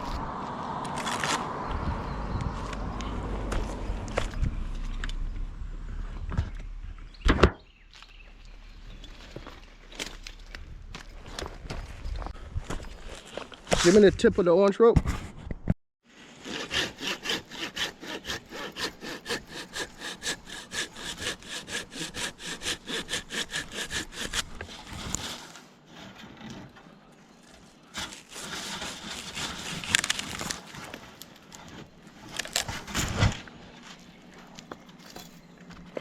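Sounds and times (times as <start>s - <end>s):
handsaw cutting wood: 16.3s - 25.4s, 28.0s - 30.8s.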